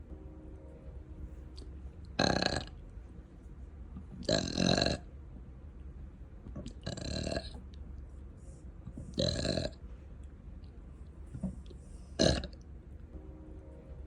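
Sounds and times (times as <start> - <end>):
person burping: 2.2 - 2.7, 4.2 - 5.0, 9.2 - 9.8, 12.2 - 12.5.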